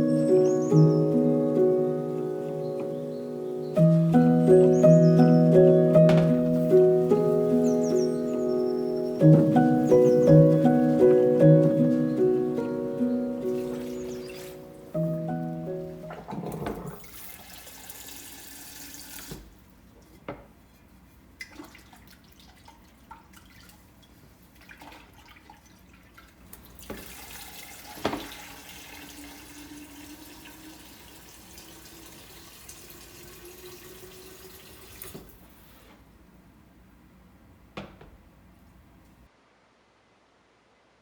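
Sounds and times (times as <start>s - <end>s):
tap running into sink: 6.0s - 6.4s, 19.1s - 19.5s, 26.8s - 29.0s, 34.6s - 35.4s.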